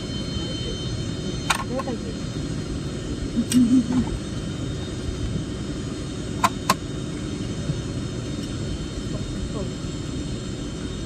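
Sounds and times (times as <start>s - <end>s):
airliner cabin rumble: 0.0s - 11.0s.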